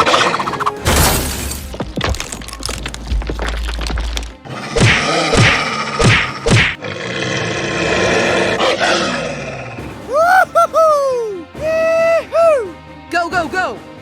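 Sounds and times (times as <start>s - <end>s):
background music: 0.0s - 14.0s
growling sound effects: 4.5s - 10.0s.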